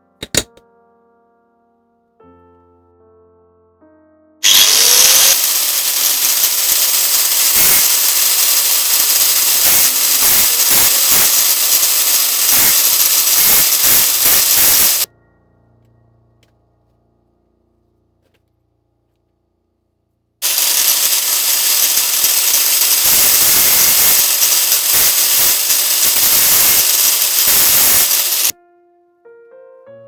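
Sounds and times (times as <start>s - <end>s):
small power tool whining: 4.4s - 15.1s, 20.4s - 28.5s
faint background music: 15.1s - 20.2s, 28.5s - 30.0s.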